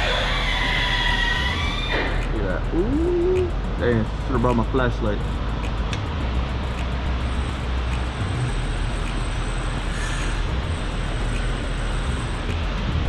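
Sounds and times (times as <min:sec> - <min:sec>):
even hiss: 0:00.0 - 0:13.0
low rumble: 0:00.0 - 0:13.0.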